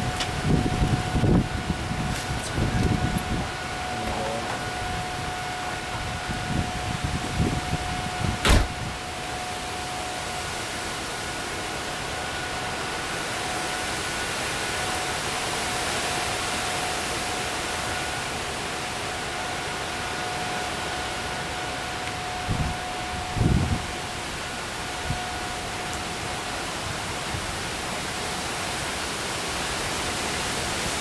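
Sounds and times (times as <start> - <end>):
rain: 0.0 - 31.0
warning siren steady tone: 0.0 - 31.0
wind: 0.0 - 31.0
sharp knock: 8.4 - 8.7.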